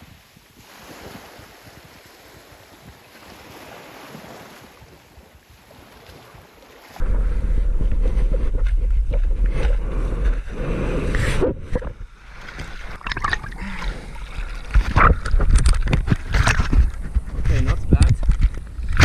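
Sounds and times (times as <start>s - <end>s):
water splashes: 0.0s - 19.0s
wind rumble on microphone: 0.0s - 19.0s
rushing gurgling water: 5.7s - 19.0s.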